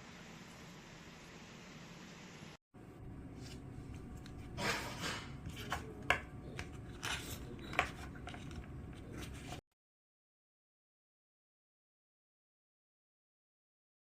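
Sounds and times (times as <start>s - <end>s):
low hum: 2.8s - 9.6s
rustling handling noise: 3.3s - 9.6s.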